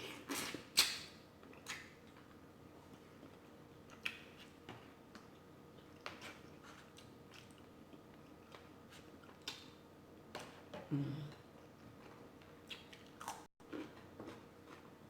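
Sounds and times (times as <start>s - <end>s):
chewing food: 5.2s - 9.8s, 11.3s - 15.0s.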